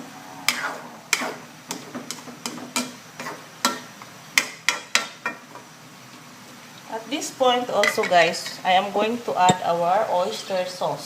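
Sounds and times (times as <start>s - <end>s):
spatula scraping a wok: 0.4s - 3.9s.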